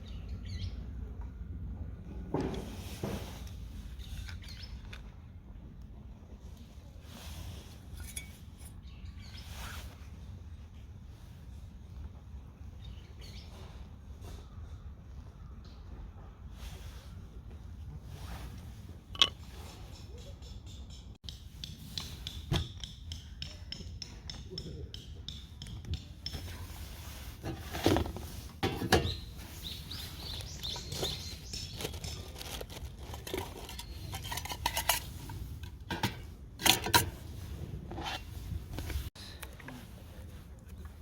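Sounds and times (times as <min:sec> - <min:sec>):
metal cookware clinking: 0:35.9 - 0:37.2.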